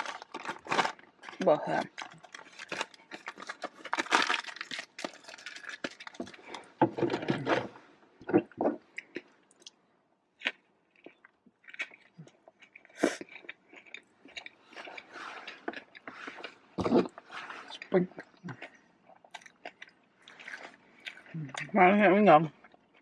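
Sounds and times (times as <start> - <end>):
chewing and crunching food: 0.0 - 23.0.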